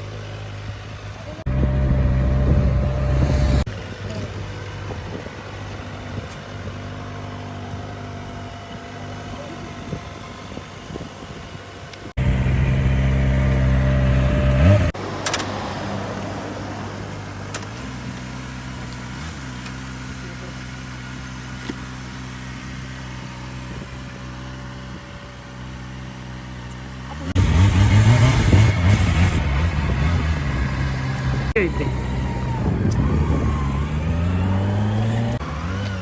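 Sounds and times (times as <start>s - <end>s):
motorcycle engine idling: 0.0s - 4.8s, 5.5s - 14.9s, 16.8s - 35.4s
engine revving: 1.4s - 3.7s, 12.2s - 21.8s, 27.0s - 36.0s.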